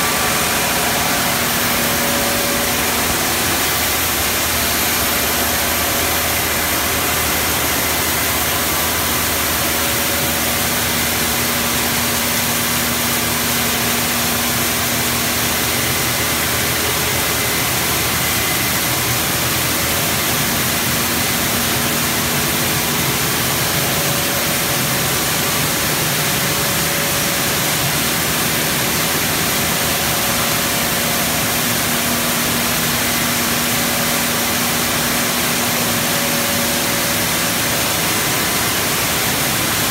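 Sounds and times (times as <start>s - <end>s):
milling machinery running: 0.0s - 39.9s.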